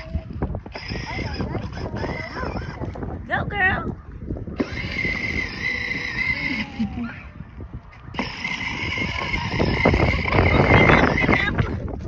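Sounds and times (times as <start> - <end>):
toy electric motor whining: 0.0 - 2.9, 4.6 - 7.2, 8.1 - 11.8
wheels rumbling on ground: 0.0 - 12.0.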